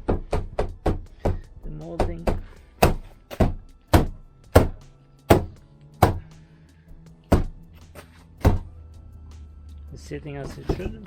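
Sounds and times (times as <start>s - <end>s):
faint background music: 0.0s - 11.0s
knocks on plastic door moulding: 2.0s - 6.2s, 7.3s - 7.6s.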